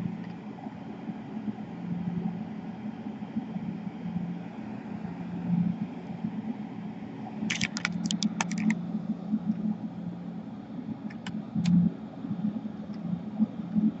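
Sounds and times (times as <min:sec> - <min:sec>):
sharp small clicks: 0:07.5 - 0:08.8, 0:11.1 - 0:11.8.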